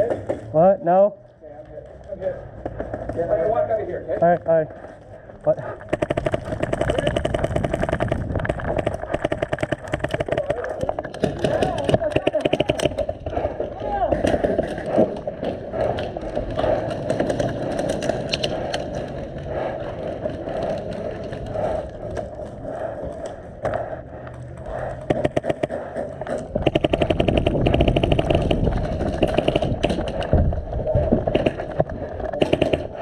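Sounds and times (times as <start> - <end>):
steady background noise: 0.0 - 33.0
airsoft gun firing full auto: 5.9 - 7.9, 11.2 - 13.1, 26.6 - 30.2, 32.4 - 33.0.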